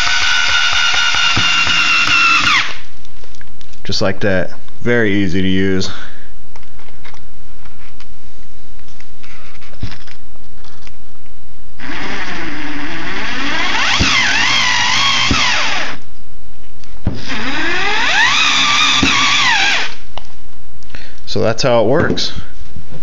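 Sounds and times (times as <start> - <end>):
cordless screwdriver motor whining: 0.0 - 2.8, 11.8 - 16.0, 17.3 - 20.0.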